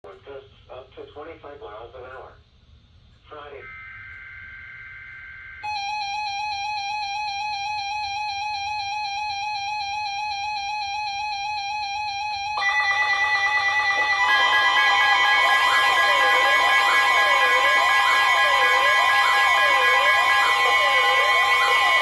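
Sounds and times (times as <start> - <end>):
steady wavering electronic tone: 3.6 - 8.3, 11.2 - 22.0.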